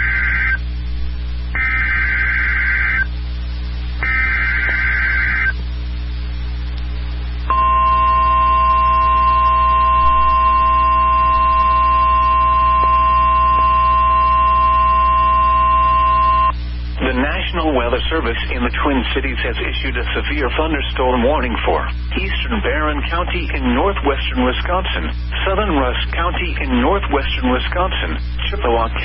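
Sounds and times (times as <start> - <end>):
buzzing warble data bursts: 0.0 - 0.7, 1.5 - 3.2, 3.9 - 5.9
steady alarm tone: 0.0 - 0.7, 1.5 - 3.1, 4.0 - 5.6, 7.5 - 16.6
low electrical hum: 0.0 - 29.0.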